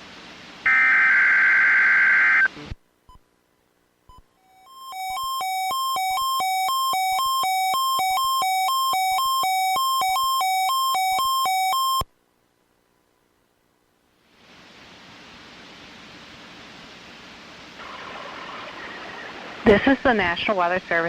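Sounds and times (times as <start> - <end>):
two-pitch alarm beeping: 4.5 - 12.0.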